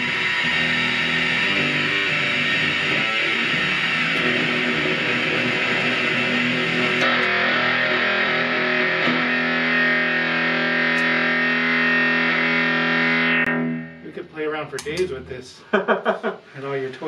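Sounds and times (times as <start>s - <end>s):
fuzz distorted electric guitar chords: 0.0s - 15.4s.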